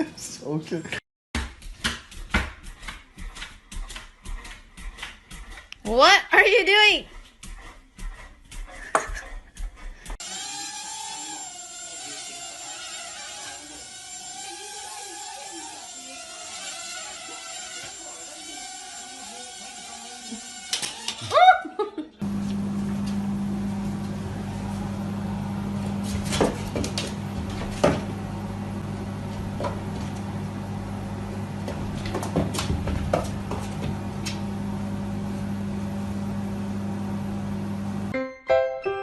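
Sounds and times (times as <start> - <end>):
low machine hum: 22.2 - 38.1.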